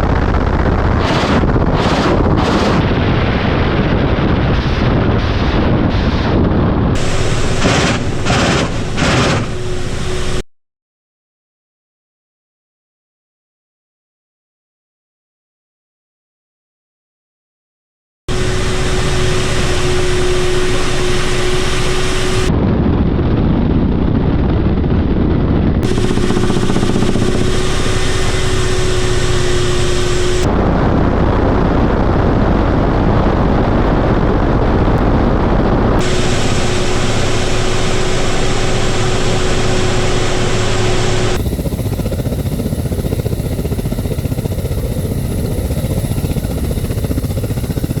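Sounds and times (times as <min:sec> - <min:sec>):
helicopter engines and rotors: 0:00.0 - 0:10.4, 0:18.3 - 0:48.0
steady whine: 0:00.0 - 0:10.4, 0:18.3 - 0:22.7, 0:25.8 - 0:48.0.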